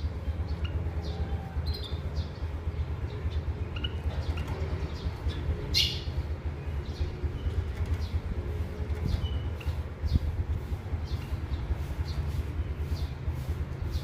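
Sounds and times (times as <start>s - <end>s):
small birds chirping: 0.0s - 14.0s
steady low hum: 0.0s - 14.0s.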